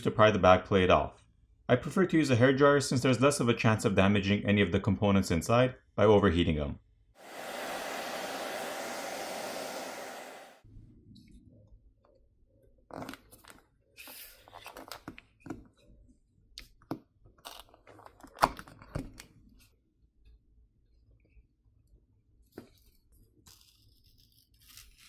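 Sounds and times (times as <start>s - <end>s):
hair dryer blowing: 7.2s - 10.6s.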